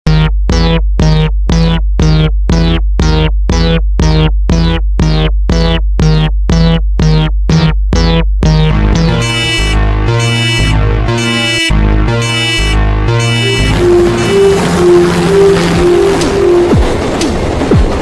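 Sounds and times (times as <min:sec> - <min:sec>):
low synthesizer bass drone: 0:00.0 - 0:17.0
railroad crossing bell ringing: 0:13.3 - 0:18.0.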